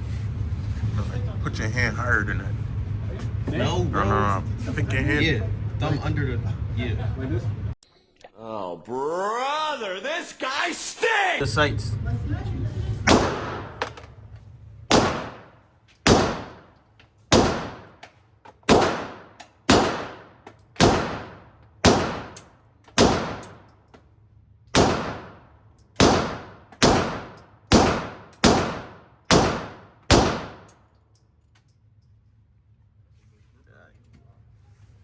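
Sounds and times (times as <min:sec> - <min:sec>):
handgun shots echoing: 0:13.1 - 0:14.1, 0:14.9 - 0:18.0, 0:18.6 - 0:23.8, 0:24.7 - 0:30.9.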